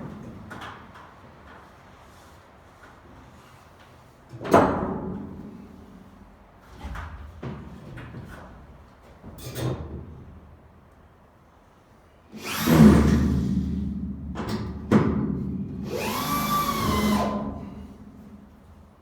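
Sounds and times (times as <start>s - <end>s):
power drill running: 12.4s - 13.4s, 15.8s - 17.7s.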